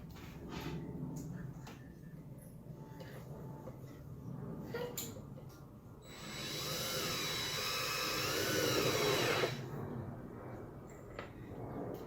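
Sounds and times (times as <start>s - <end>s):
drill motor whining: 6.1s - 9.6s.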